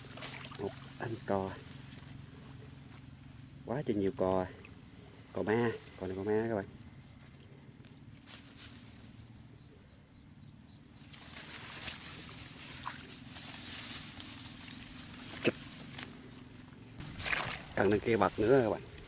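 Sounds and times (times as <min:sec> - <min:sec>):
steady low hum: 0:00.0 - 0:19.0
rustling hiss: 0:11.1 - 0:16.3, 0:17.0 - 0:19.0.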